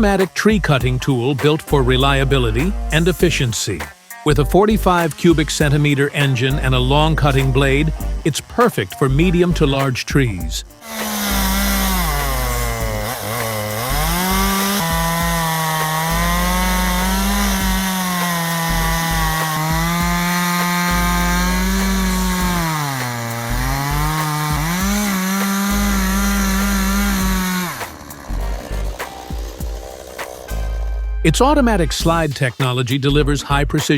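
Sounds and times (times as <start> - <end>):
chainsaw cutting wood: 0.0 - 31.2.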